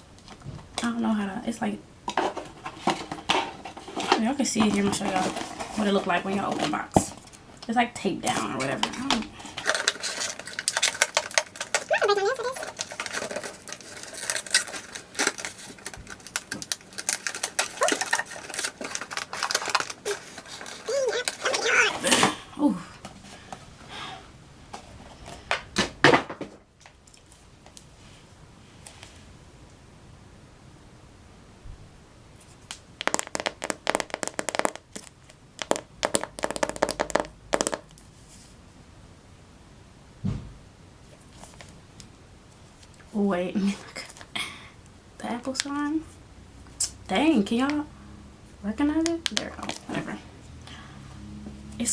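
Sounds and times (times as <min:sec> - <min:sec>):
plastic packaging crinkling: 0:08.4 - 0:22.2
cardboard box being opened: 0:12.1 - 0:22.1.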